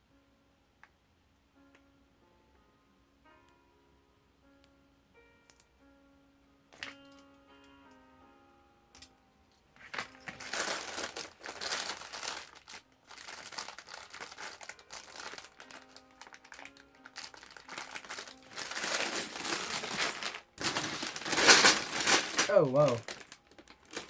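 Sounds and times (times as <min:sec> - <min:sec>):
soft background music: 0:00.0 - 0:24.0
plastic bags crinkling: 0:09.8 - 0:24.0.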